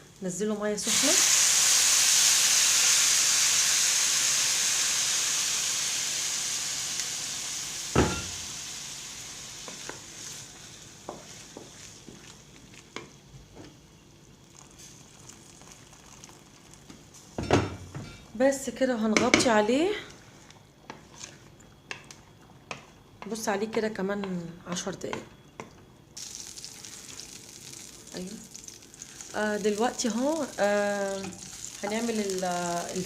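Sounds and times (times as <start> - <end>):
food sizzling in a pot: 0.0 - 18.3, 26.2 - 33.0
water hissing in hot oil: 0.8 - 12.8, 14.3 - 17.4, 26.2 - 33.0.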